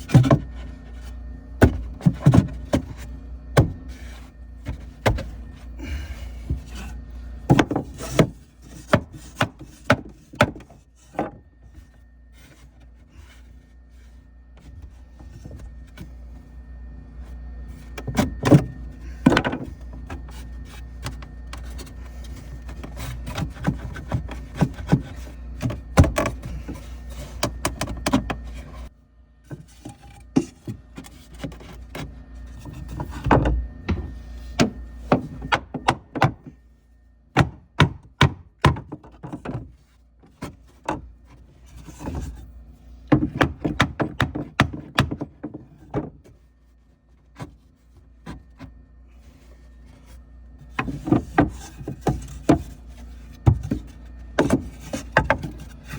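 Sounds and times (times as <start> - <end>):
steady low hum: 0.0 - 55.9
wooden knocks and clunks: 1.6 - 4.0, 7.4 - 11.4, 18.0 - 20.3, 22.6 - 26.8, 30.3 - 36.6, 37.4 - 41.1, 43.1 - 46.4, 50.7 - 55.8.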